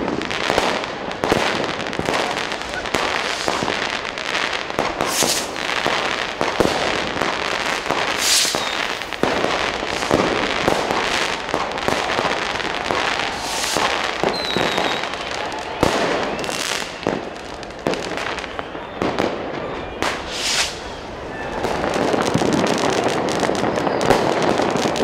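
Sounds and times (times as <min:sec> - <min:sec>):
firecrackers crackling: 0:00.0 - 0:25.0
loud fireworks bangs: 0:00.0 - 0:25.0
rockets hissing up: 0:02.2 - 0:17.3, 0:20.1 - 0:21.0.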